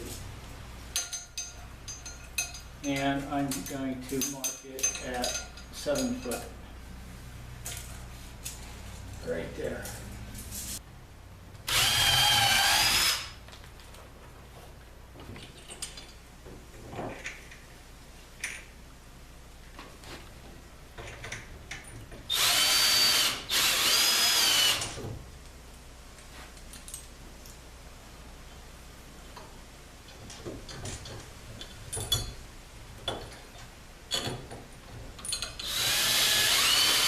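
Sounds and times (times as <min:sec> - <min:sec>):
power drill boring into wood: 0:11.7 - 0:13.3, 0:22.3 - 0:25.0, 0:35.6 - 0:37.0.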